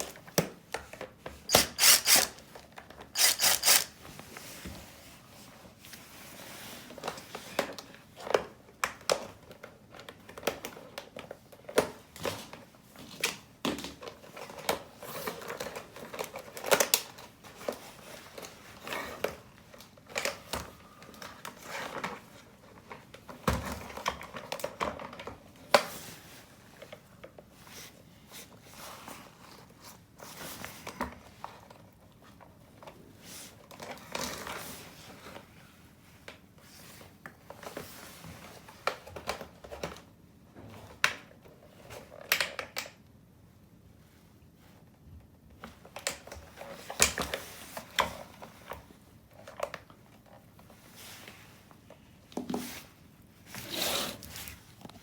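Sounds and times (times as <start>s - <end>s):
clicks of small hard parts: 1.5s - 2.4s, 3.1s - 4.0s.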